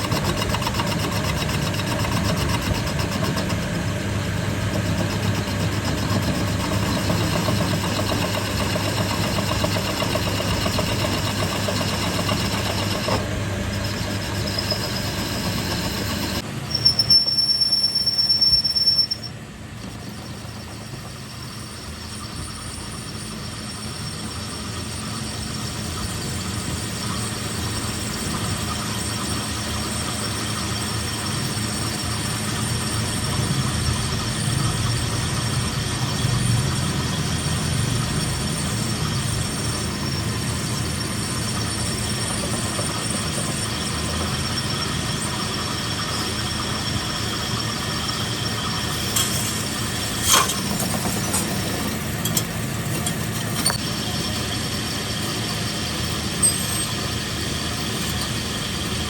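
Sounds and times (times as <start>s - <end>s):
workshop machine running: 0.0s - 59.0s
high-pitched squeal: 0.1s - 19.4s.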